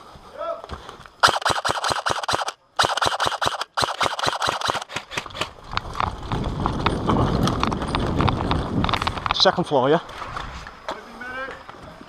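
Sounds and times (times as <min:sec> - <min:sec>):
airsoft rifles firing rapidly: 0:01.2 - 0:05.6.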